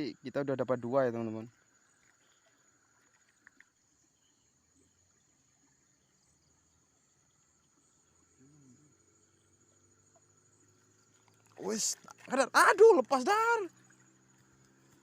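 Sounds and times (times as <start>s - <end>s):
night insects droning: 0.0s - 15.0s
faint clicks: 2.0s - 3.8s.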